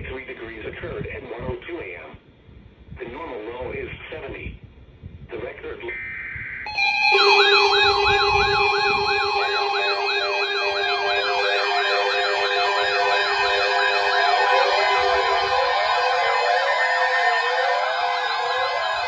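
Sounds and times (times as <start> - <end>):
electronic sirens yelping: 6.0 - 19.0
high buzzing tone: 6.7 - 19.0.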